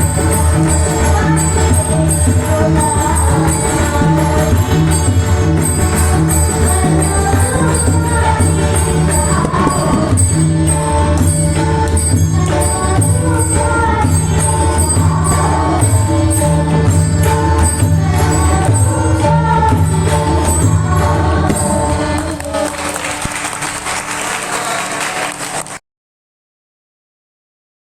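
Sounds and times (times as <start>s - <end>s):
person singing: 0.0s - 23.4s
hand drums playing: 0.0s - 23.6s.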